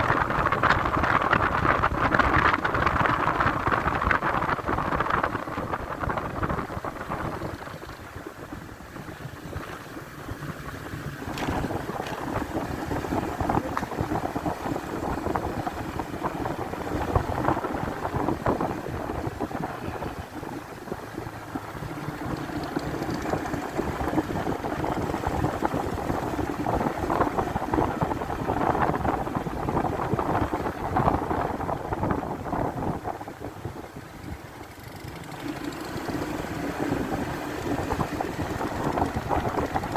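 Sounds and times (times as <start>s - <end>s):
motorcycle engine running: 0.0s - 39.9s
wind noise on microphone: 0.0s - 39.9s.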